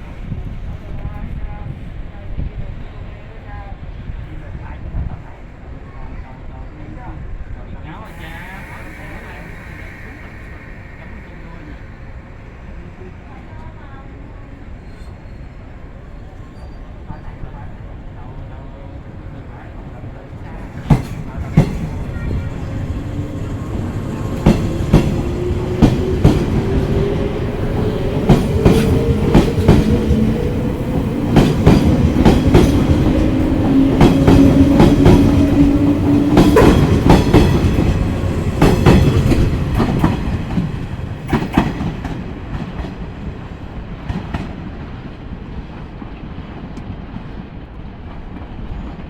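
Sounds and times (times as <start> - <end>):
train wheels clacking: 20.6 - 44.8.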